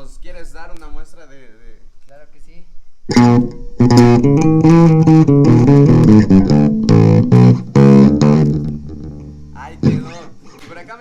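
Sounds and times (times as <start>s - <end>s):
electric bass guitar: 3.1s - 10.7s.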